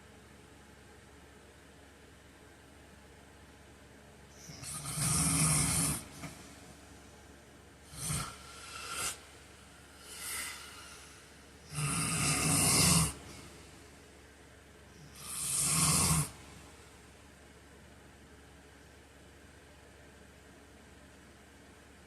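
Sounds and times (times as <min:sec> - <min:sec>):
faint hiss: 0:04.1 - 0:17.6
man snoring: 0:04.4 - 0:06.6, 0:07.9 - 0:13.6, 0:15.0 - 0:16.6.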